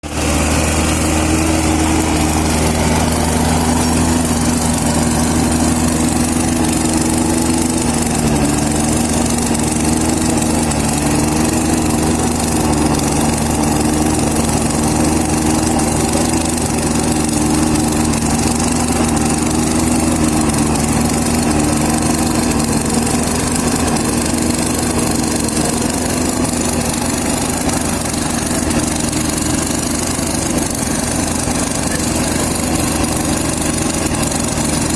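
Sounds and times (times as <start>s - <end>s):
engine running steadily: 0.0s - 34.9s.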